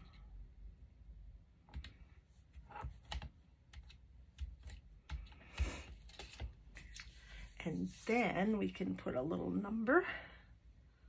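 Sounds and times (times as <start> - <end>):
paper rustle: 5.6 - 8.2.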